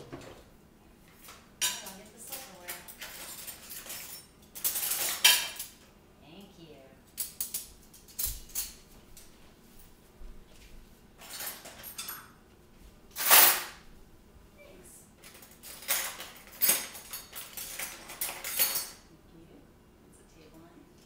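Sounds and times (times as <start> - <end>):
dishes and cutlery clattering: 1.6 - 5.8, 11.2 - 12.4, 13.2 - 13.8, 15.2 - 19.1.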